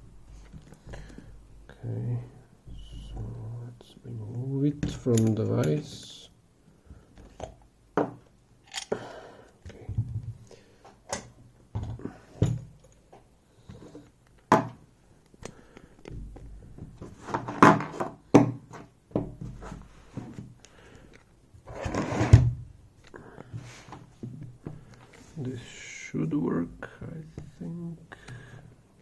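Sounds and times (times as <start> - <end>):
metal parts clicking and knocking: 8.6 - 9.0.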